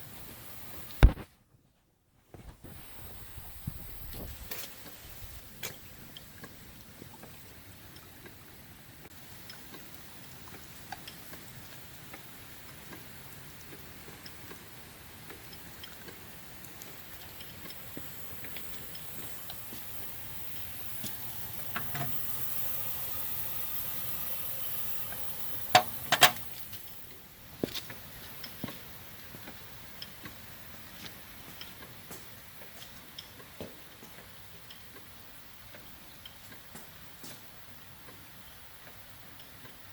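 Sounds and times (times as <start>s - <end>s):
light regular ticking: 9.0s - 33.5s
steam hissing: 16.3s - 31.5s
sharp metallic clacks: 25.7s - 26.6s.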